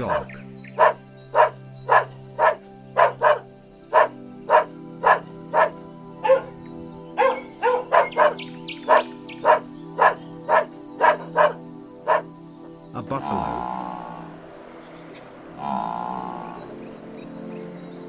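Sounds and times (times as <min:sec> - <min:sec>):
dog barking: 0:00.0 - 0:12.3
dog yelping: 0:00.1 - 0:06.6, 0:07.2 - 0:12.2.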